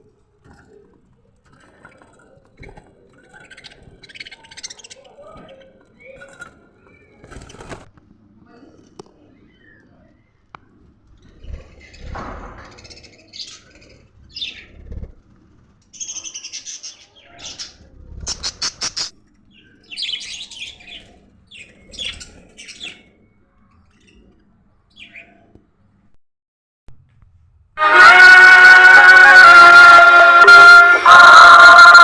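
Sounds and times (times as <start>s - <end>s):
budgerigars chirping: 3.2s - 5.6s, 16.0s - 23.1s.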